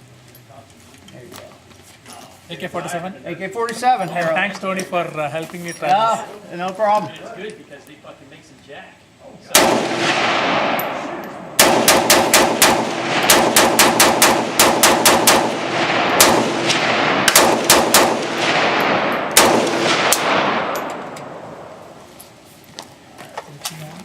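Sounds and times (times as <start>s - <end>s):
rifle firing rapid shots: 9.5s - 21.1s.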